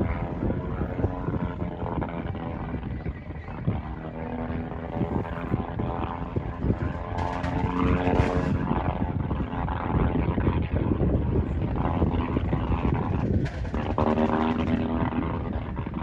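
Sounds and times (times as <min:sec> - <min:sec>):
propeller aircraft engine running rough: 0:00.0 - 0:16.0.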